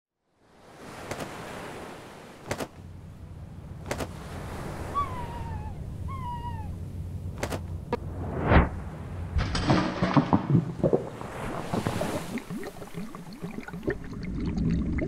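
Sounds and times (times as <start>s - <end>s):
low steady rumble: 2.8s - 11.4s
seagull calls: 4.5s - 7.7s
rising whoosh: 7.9s - 9.3s.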